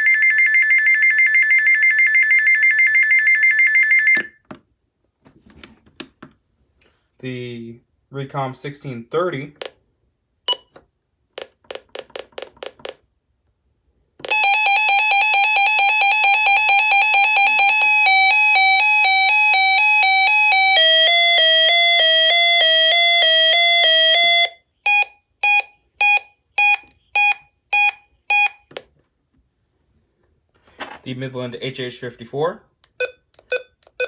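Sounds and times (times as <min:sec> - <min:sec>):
warbling electronic alert siren: 0:00.0 - 0:04.4, 0:14.3 - 0:28.7
short beeps: 0:10.5 - 0:10.8.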